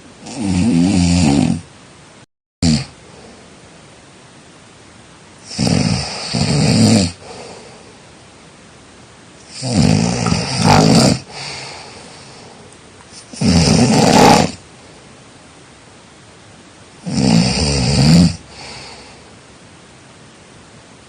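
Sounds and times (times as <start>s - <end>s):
person snoring: 0.2s - 1.6s, 2.6s - 3.0s, 5.4s - 7.8s, 9.5s - 12.6s, 13.2s - 14.6s, 17.0s - 19.2s.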